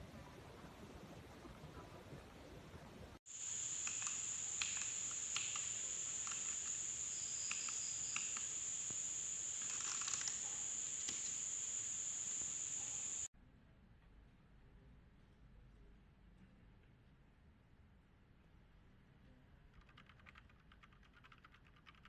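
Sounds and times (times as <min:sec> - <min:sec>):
light clicks: 0:03.7 - 0:11.6.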